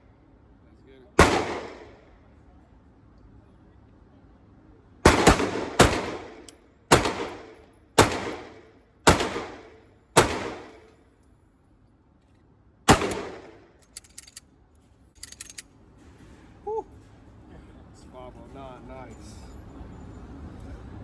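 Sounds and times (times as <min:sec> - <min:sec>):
pistol shots with ringing echo: 0:01.2 - 0:02.2, 0:05.0 - 0:10.9, 0:12.9 - 0:13.7.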